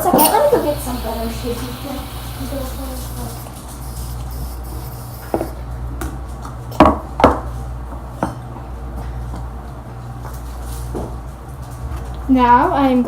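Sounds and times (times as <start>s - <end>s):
steady low hum: 0.0s - 6.0s.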